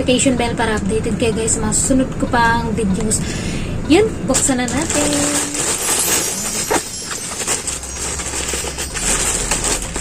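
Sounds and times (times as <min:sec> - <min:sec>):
plastic package crinkling: 0:04.4 - 0:10.0.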